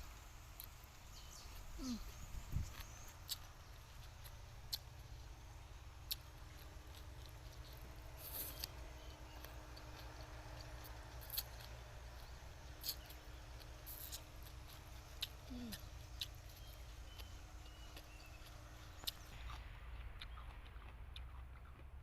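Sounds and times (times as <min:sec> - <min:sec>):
low hum: 0:00.0 - 0:22.0
chewing raw vegetables: 0:00.5 - 0:22.0.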